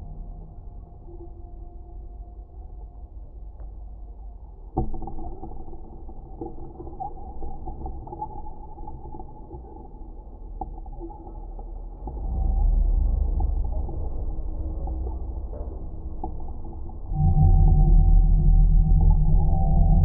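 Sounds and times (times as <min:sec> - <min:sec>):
muffled low rumble: 0:12.0 - 0:20.0.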